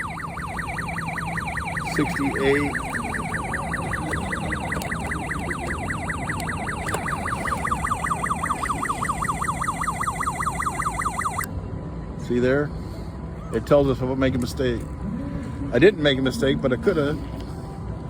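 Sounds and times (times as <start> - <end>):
electronic siren warble: 0.0 - 11.5.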